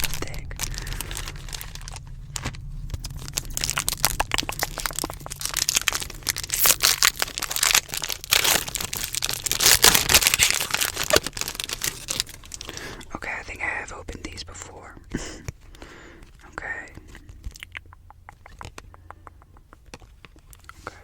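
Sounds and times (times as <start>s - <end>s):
plastic wrapper crinkling: 0.0s - 13.4s.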